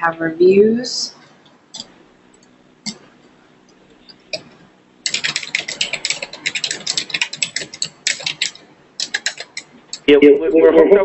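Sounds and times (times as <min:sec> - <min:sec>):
computer keyboard typing: 0:01.7 - 0:03.0, 0:04.0 - 0:10.1.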